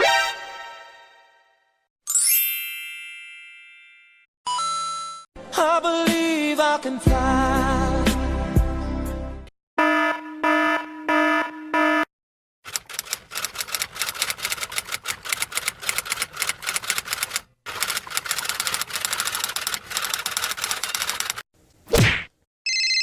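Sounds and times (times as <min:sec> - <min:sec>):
fast typing clicks: 0:12.7 - 0:21.4.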